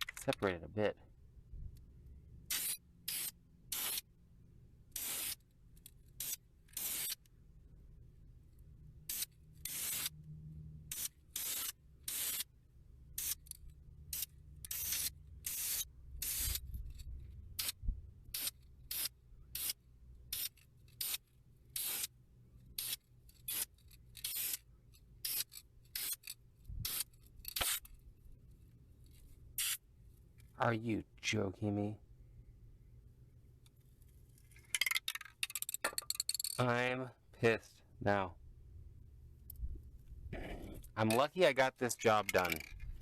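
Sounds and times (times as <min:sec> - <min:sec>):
aerosol spray can hissing bursts: 0:02.5 - 0:04.0, 0:05.0 - 0:05.4, 0:06.2 - 0:07.2, 0:09.1 - 0:10.2, 0:10.9 - 0:12.5, 0:14.1 - 0:16.6, 0:21.8 - 0:22.1, 0:29.6 - 0:29.8.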